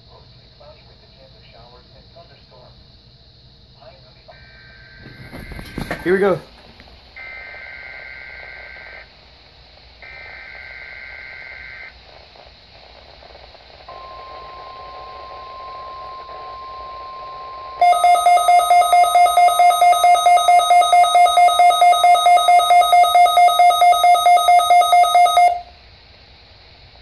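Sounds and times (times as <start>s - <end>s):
alert receiver alarm beeping: 13.9s - 25.7s
data bursts: 13.9s - 25.7s
two-tone buzzing warble: 13.9s - 25.7s
steady warning alarm tone: 13.9s - 25.8s.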